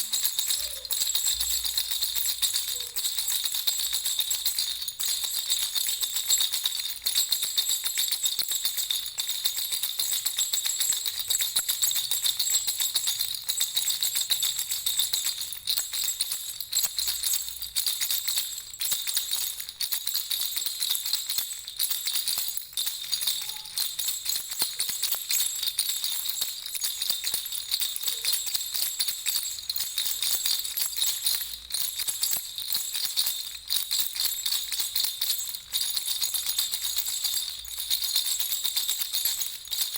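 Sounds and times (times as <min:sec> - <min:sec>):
baby rattle bells jingling: 0:00.0 - 0:39.9.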